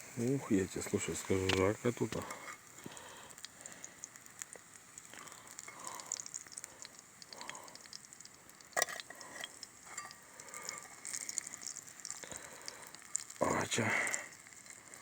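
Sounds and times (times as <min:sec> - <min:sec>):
food sizzling in hot oil: 0:00.0 - 0:15.0.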